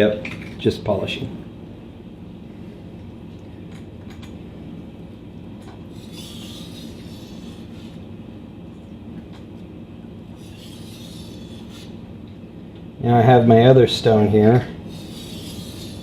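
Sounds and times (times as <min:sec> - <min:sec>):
blade scraping on whetstone: 0:05.9 - 0:08.0, 0:10.4 - 0:12.0, 0:14.9 - 0:16.0.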